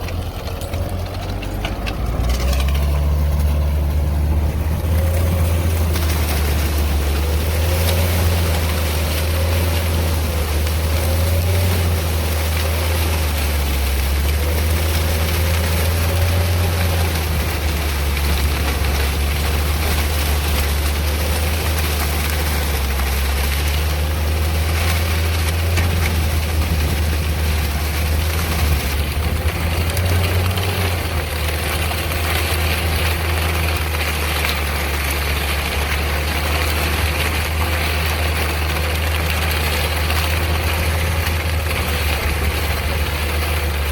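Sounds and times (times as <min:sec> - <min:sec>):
tiller engine droning: 0:00.0 - 0:43.9.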